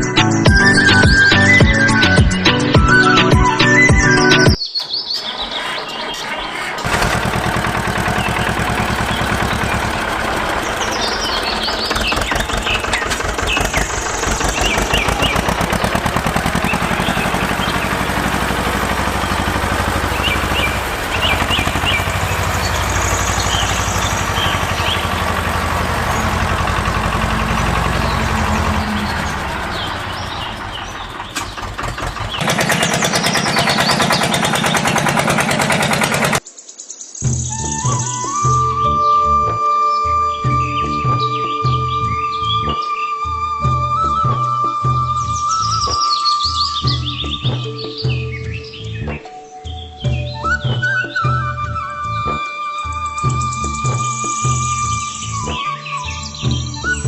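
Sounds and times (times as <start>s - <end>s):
birds chirping: 0.0s - 43.4s, 45.2s - 51.7s, 52.8s - 57.0s
small engine running: 5.1s - 36.4s.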